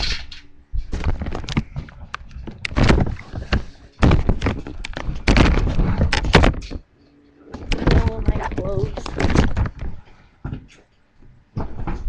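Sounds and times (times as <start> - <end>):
rustling: 0.0 - 10.7
loud thumps and knocks: 0.8 - 6.8, 7.5 - 10.7.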